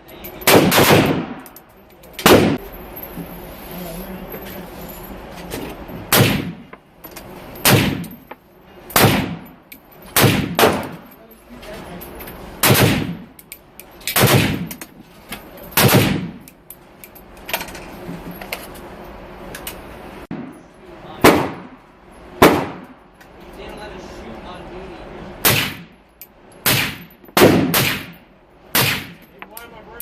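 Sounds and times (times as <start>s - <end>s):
suppressed rifle shots: 0.5s - 1.4s.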